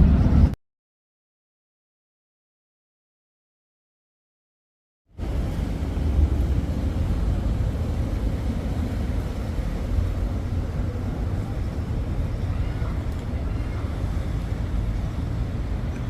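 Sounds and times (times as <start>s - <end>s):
boat engine rumbling: 0.0s - 0.6s, 5.1s - 16.0s
water and wind noise: 0.0s - 0.6s, 5.1s - 16.0s.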